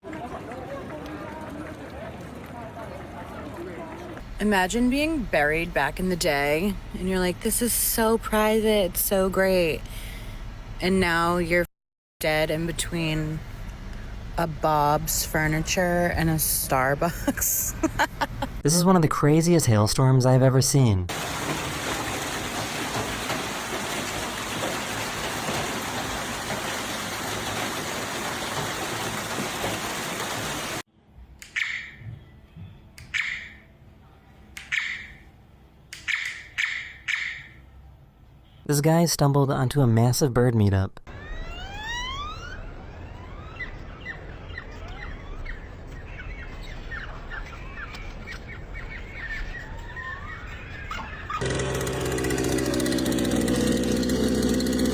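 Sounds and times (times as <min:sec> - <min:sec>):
hailstones pelting down: 0:21.1 - 0:30.8
birds whistling: 0:43.0 - 0:51.4
birds chattering: 0:43.4 - 0:51.4.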